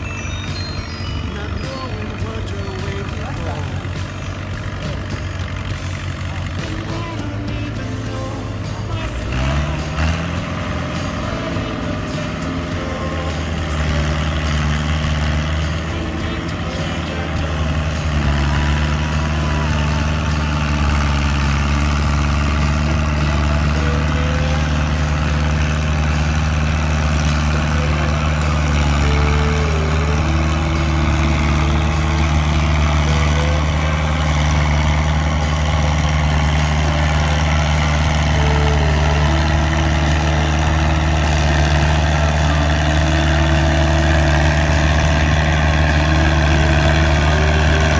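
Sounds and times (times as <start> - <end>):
tractor diesel engine running: 0.0 - 47.9.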